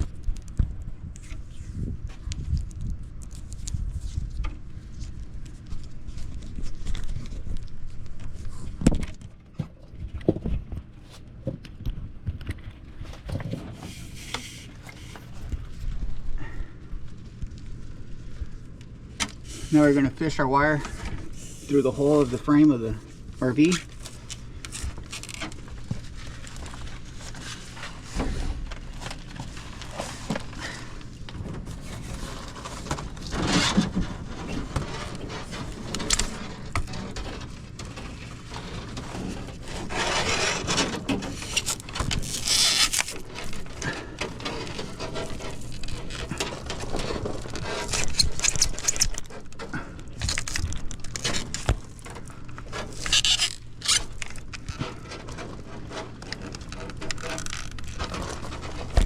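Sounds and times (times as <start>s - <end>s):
wire scraping through metal frame: 19.5s - 59.0s.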